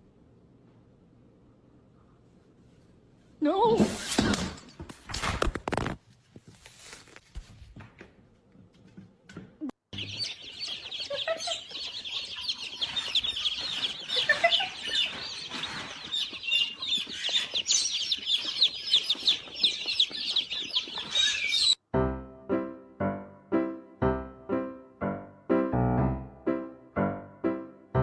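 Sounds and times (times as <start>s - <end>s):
chickens clucking and peeping: 10.0s - 21.8s
piano music: 21.8s - 28.0s.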